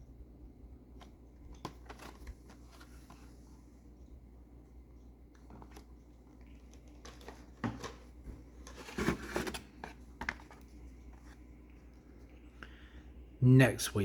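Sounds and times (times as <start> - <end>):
cardboard and plastic packaging rustling: 1.0 - 3.5, 5.3 - 12.1.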